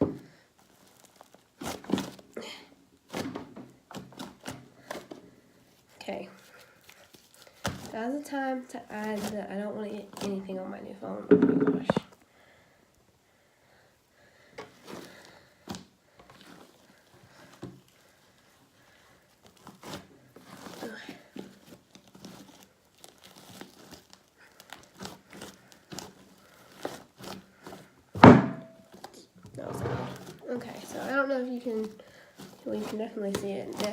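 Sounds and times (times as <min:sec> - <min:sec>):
slime crackling and squishing: 0:00.5 - 0:02.3, 0:05.7 - 0:11.0, 0:17.8 - 0:28.0, 0:30.2 - 0:33.9.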